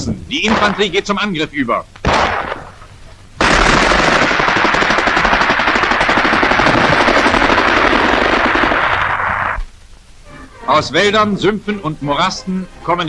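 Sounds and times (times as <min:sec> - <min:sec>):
machine-gun fire: 0:00.4 - 0:01.3, 0:01.9 - 0:09.7.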